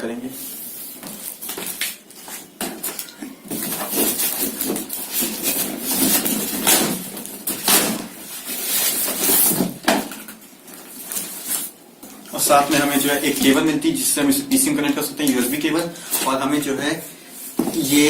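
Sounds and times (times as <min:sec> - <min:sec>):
packaging rustling: 0:01.0 - 0:13.4.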